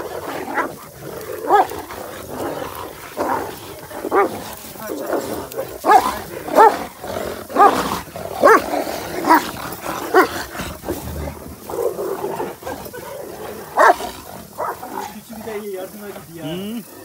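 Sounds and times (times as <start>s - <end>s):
dogs barking: 0.0s - 17.0s
dogs growling: 0.0s - 17.0s.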